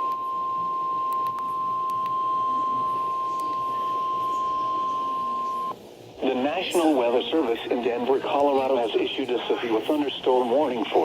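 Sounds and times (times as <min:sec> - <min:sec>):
steady alarm beep: 0:00.0 - 0:05.8.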